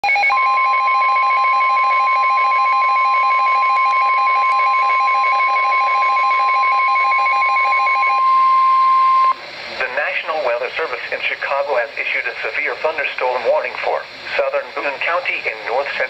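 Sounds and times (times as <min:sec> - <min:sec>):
steady high alarm tone: 0:00.0 - 0:09.4.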